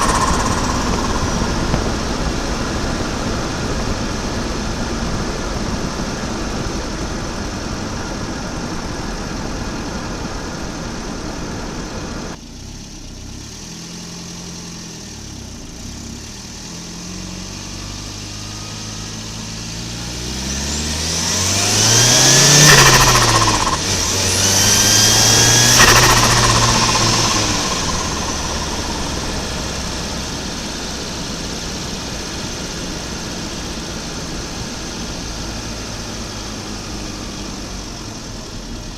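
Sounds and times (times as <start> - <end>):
turbo whine: 0.0 - 5.6, 18.4 - 38.0
car engine revving: 0.0 - 5.8, 13.3 - 38.8.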